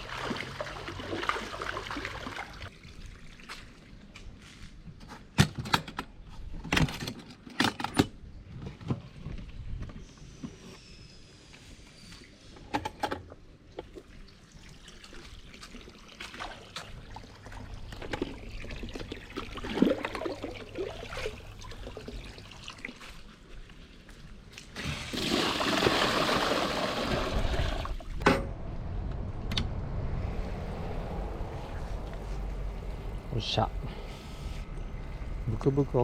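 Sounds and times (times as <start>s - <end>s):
water pouring and sloshing: 0.0s - 4.8s, 13.3s - 28.2s.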